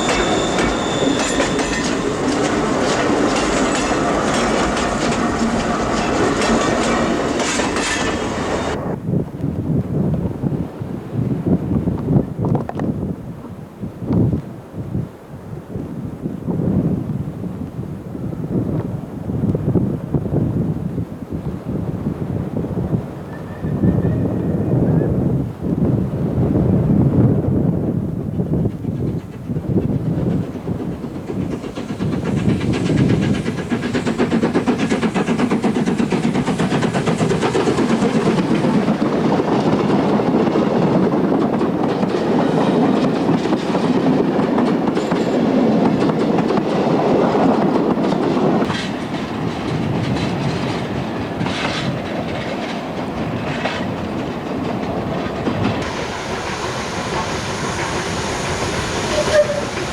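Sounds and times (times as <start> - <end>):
steam train wheels clattering: 0.0 - 9.0, 28.5 - 59.9.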